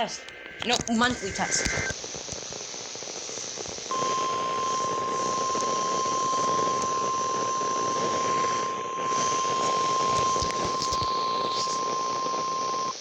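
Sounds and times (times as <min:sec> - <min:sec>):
radio static hiss: 0:00.0 - 0:13.0
steady warning alarm tone: 0:03.9 - 0:13.0.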